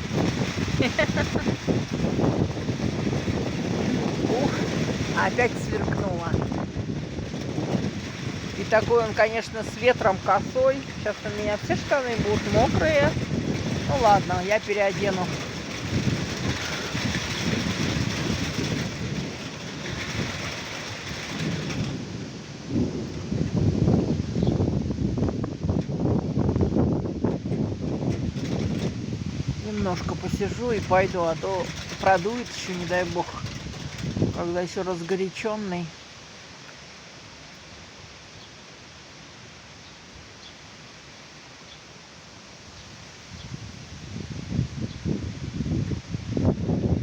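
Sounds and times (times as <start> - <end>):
wind buffeting microphone: 0.0 - 36.3, 42.6 - 47.0
heavy rain hiss: 0.0 - 47.0.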